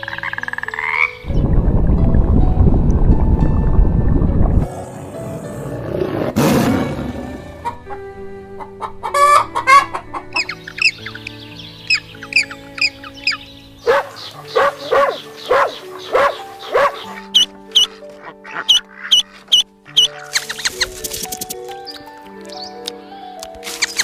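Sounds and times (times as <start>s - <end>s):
background music: 0.0s - 24.0s
chickens clucking: 8.6s - 11.2s.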